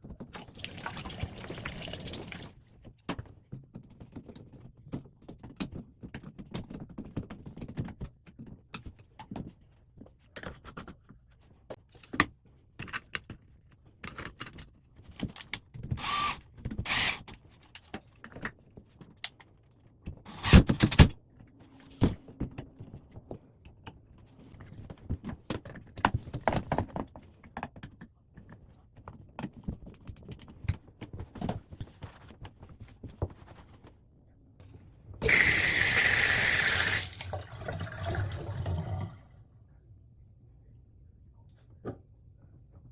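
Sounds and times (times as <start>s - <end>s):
tap water running: 0.4s - 2.6s, 16.0s - 17.3s, 35.2s - 39.2s.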